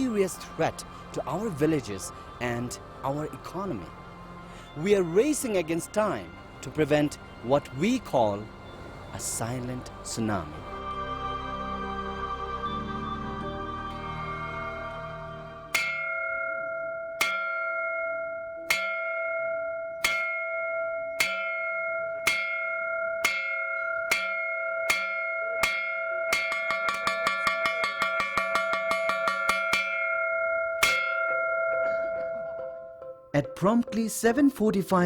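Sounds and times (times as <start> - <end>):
bell ringing: 13.4 - 34.4.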